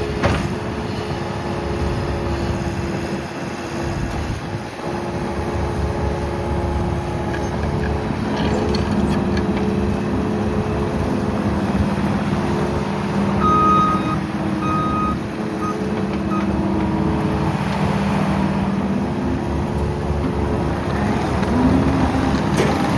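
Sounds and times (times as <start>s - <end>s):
diesel engine running: 0.0s - 22.9s.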